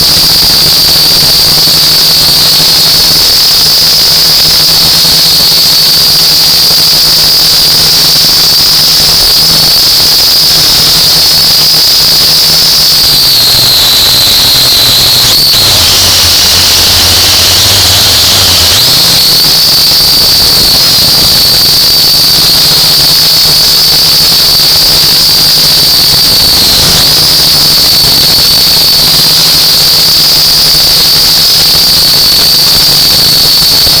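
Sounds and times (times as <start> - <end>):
drone motors whining: 7.1 - 34.0.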